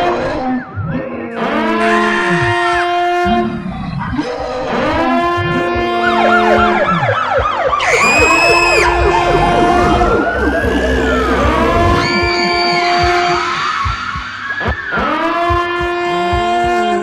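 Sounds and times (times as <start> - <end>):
emergency vehicle siren: 5.8 - 13.6
held music notes: 5.8 - 13.6.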